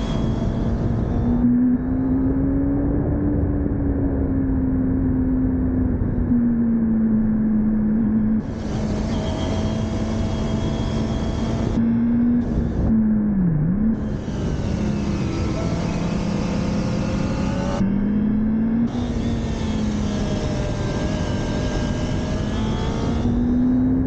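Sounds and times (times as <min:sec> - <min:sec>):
motorcycle engine: 0:00.0 - 0:24.0
wind rush: 0:08.4 - 0:24.0.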